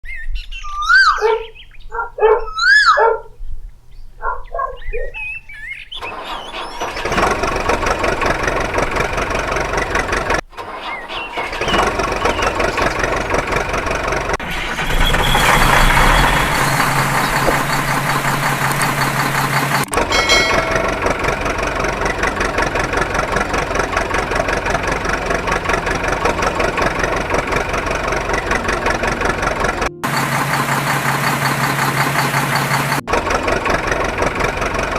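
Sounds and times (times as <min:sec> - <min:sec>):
excavator diesel engine running: 0:06.0 - 0:34.9
rising and falling whistle tones: 0:14.5 - 0:19.2.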